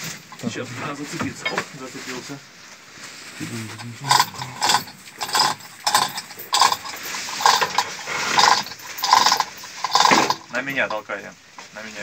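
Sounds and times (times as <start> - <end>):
squeaky metallic ratcheting: 3.7 - 11.7.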